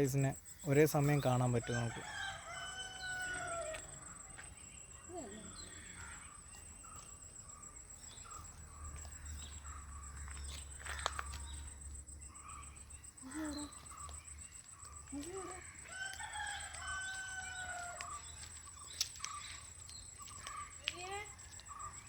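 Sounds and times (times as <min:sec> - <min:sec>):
rooster crowing: 0:01.6 - 0:04.0, 0:15.7 - 0:18.3.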